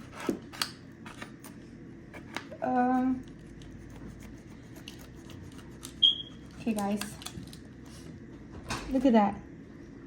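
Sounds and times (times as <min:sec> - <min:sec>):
utensil scraping and clicking: 0:03.0 - 0:07.7.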